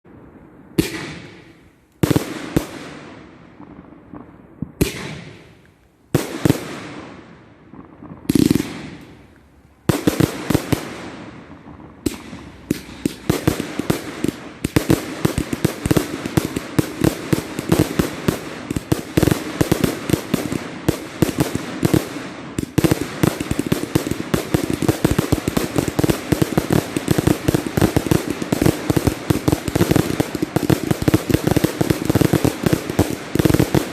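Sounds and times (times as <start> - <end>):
firework bangs: 0.0 - 33.9
firework barrage volley and crackling: 0.0 - 33.9.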